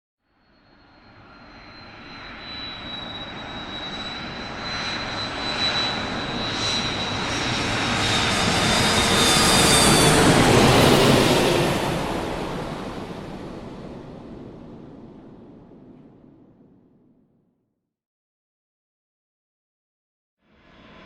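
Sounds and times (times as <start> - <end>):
airplane flyby engine rushing: 1.0 - 16.9, 20.5 - 21.0.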